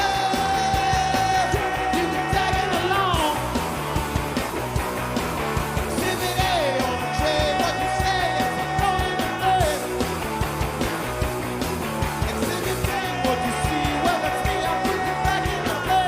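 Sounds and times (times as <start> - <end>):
person singing long sliding notes: 0.0 - 3.6, 12.6 - 16.0
drums beating: 0.0 - 16.0
punk rock band playing loud: 0.0 - 16.0.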